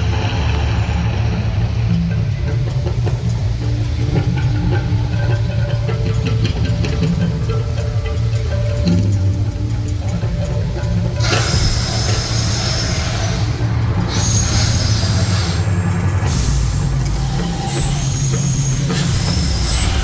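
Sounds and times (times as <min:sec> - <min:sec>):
deep rumble: 0:00.0 - 0:20.0
loud hissing: 0:02.6 - 0:20.0.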